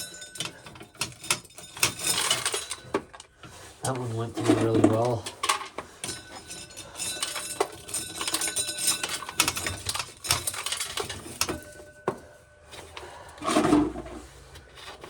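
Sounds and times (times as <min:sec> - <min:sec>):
corn sheller clattering: 0:00.0 - 0:12.2.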